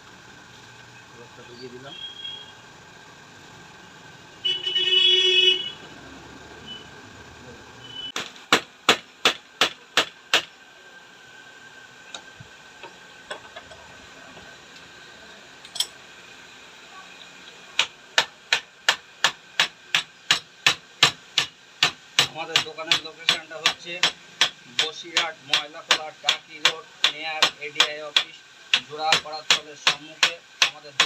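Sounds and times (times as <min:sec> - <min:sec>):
hammer striking shock absorber: 0:17.8 - 0:31.0.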